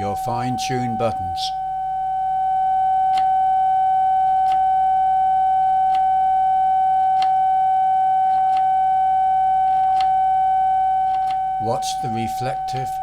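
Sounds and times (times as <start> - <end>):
steady radio sidetone: 0.0 - 1.7, 11.1 - 13.0.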